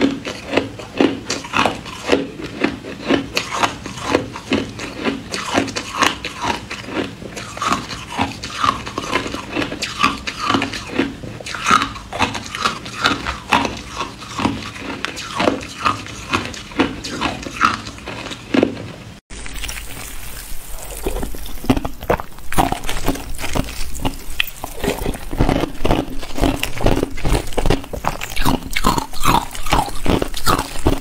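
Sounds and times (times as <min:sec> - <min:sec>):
ice crunching while chewed: 0:00.0 - 0:31.0.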